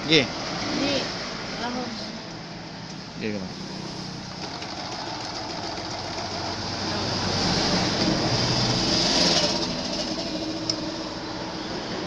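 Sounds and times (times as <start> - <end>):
sewing machine stitching: 4.2 - 7.8, 8.5 - 11.0.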